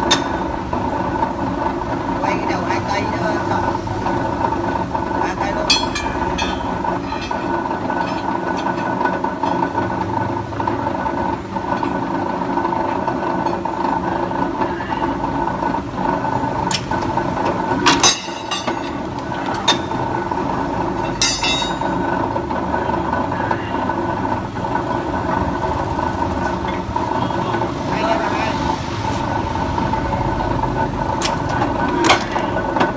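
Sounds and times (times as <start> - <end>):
sharp metallic clanks: 0.0 - 0.8, 5.5 - 10.0, 16.5 - 22.1, 31.2 - 32.9.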